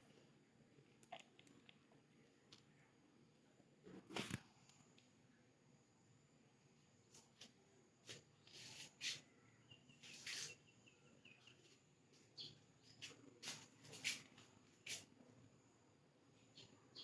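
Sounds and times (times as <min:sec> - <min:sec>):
faint high chirps: 0:08.4 - 0:13.4, 0:16.3 - 0:17.0.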